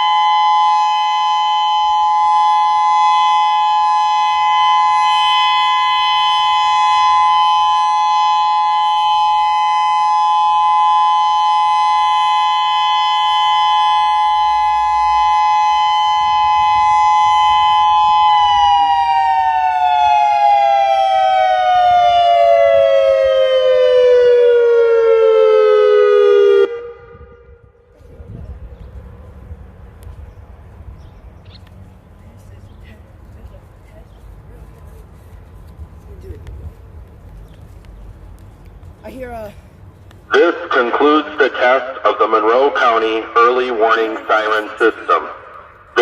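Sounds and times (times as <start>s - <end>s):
warning siren winding down: 0.0s - 27.9s.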